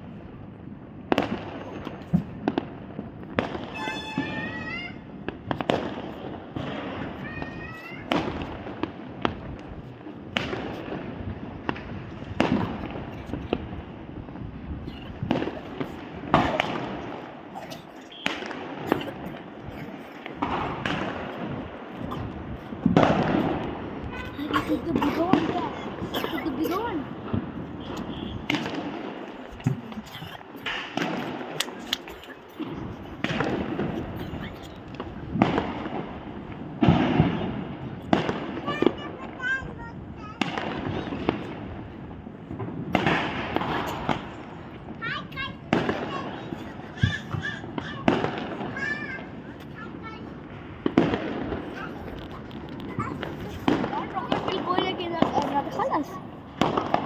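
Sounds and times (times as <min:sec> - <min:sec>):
fireworks bangs with echo: 0:00.0 - 0:57.0
sharp pops: 0:14.7 - 0:36.2.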